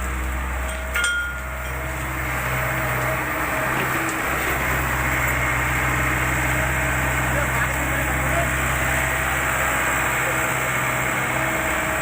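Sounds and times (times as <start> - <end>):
diesel engine running: 0.0 - 12.0
metallic clank: 0.6 - 1.8.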